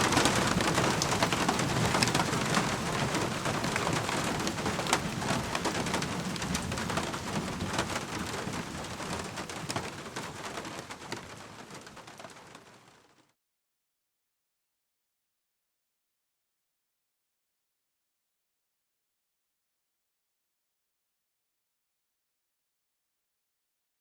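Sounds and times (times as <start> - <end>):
rain drips and splashes: 0.0 - 13.4
steady rain falling: 0.0 - 13.4.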